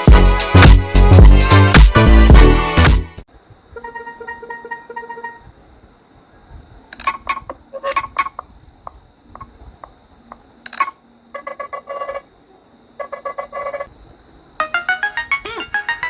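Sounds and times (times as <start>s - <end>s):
electronic alert tones: 3.8s - 5.5s.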